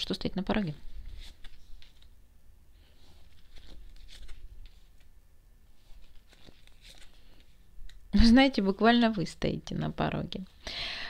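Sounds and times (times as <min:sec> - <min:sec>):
cards rustling and tapping: 0:01.0 - 0:02.1, 0:03.0 - 0:05.1, 0:05.8 - 0:08.1.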